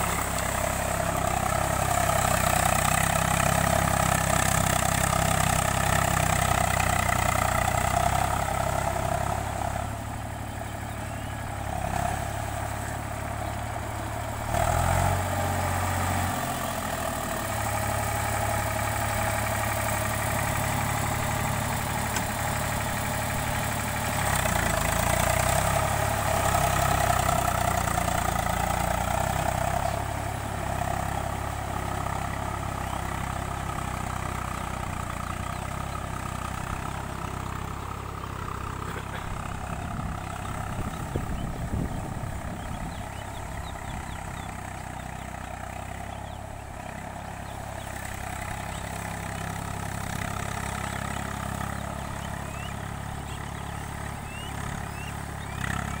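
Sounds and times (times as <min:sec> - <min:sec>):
tractor diesel engine running: 0:00.0 - 0:56.0.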